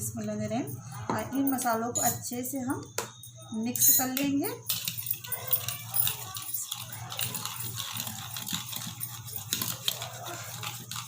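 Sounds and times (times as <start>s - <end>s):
spoon stirring wet paste: 3.5s - 11.0s.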